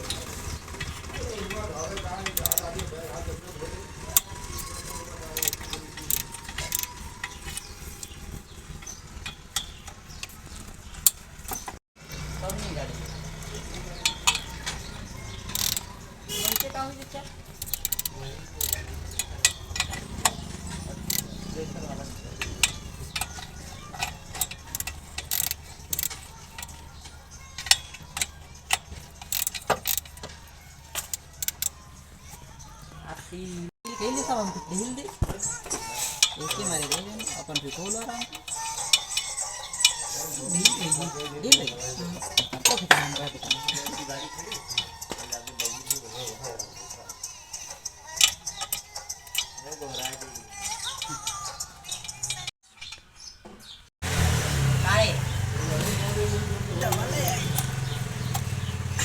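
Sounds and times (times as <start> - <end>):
metallic tool clicks and clinks: 0.8 - 8.2, 13.4 - 31.8, 35.4 - 53.0
sharp clicks and knocks: 13.4 - 31.8, 56.8 - 59.0.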